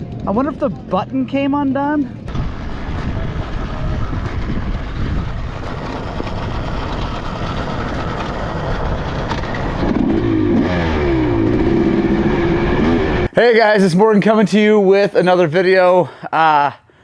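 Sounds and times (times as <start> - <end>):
dirt bike engine running: 0.0 - 13.3
wind and road noise: 0.0 - 13.5.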